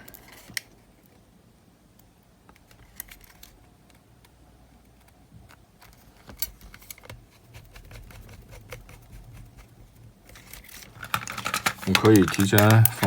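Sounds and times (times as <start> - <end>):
plastic casing clicks and taps: 11.0 - 13.0.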